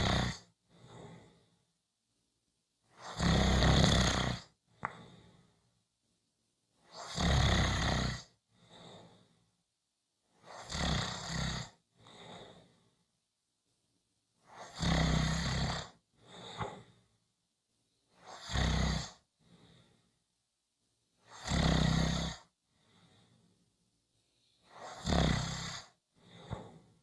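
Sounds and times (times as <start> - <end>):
person snoring: 0.0 - 1.2, 3.0 - 4.5, 7.0 - 8.3, 10.5 - 11.7, 14.6 - 15.9, 18.3 - 19.2, 21.3 - 22.5, 24.7 - 26.8
quiet breath out: 0.0 - 1.7, 4.7 - 5.7, 8.5 - 9.6, 16.2 - 17.2, 19.1 - 20.2, 22.7 - 25.0, 25.9 - 27.0.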